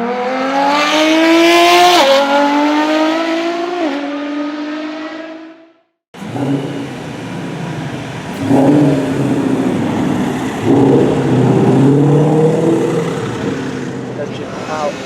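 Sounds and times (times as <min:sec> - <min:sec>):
car engine accelerating hard: 0:06.2 - 0:15.0.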